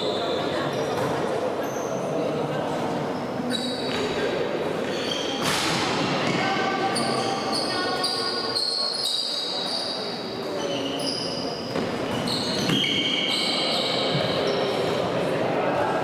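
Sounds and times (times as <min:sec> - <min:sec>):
sports shoes squeaking on court: 0:03.2 - 0:05.6, 0:06.2 - 0:15.1.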